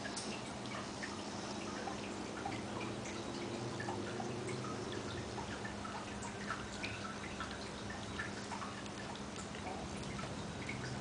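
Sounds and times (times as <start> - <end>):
low steady hum: 0.0 - 11.0
dogs gnawing and licking: 7.4 - 10.4.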